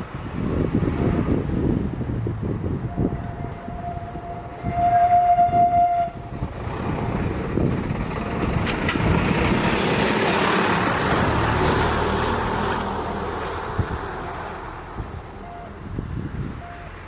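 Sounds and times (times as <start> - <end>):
electric train passing: 0.1 - 17.0
train horn blast: 2.8 - 6.3.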